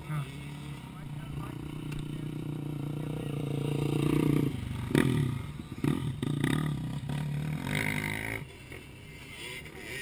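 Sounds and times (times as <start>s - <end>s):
dirt bike engines revving: 0.0s - 10.0s.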